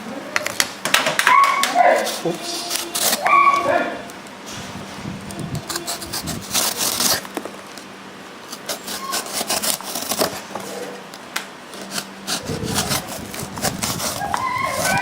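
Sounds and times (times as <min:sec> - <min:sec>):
knife sawing through cardboard: 0:04.7 - 0:07.3, 0:08.6 - 0:10.3, 0:11.8 - 0:15.0.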